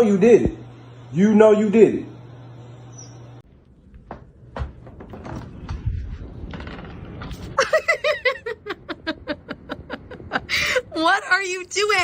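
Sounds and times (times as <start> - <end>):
knocks and thumps: 4.0 - 7.5
person laughing: 7.6 - 11.0.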